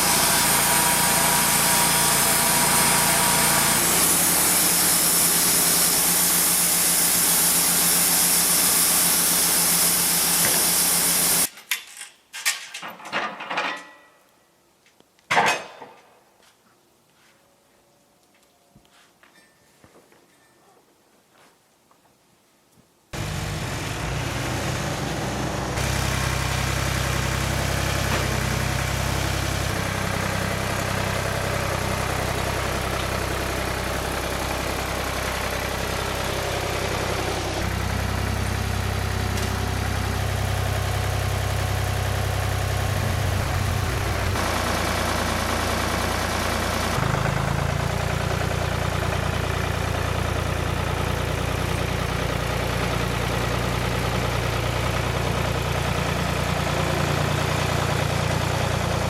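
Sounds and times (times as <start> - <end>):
sawmill engine running: 0.0 - 11.5, 23.2 - 59.0.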